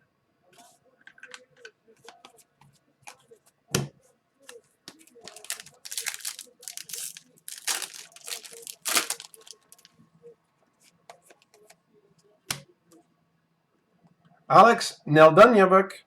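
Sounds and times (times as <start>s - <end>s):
card wrappers tearing and crinkling: 5.0s - 9.9s.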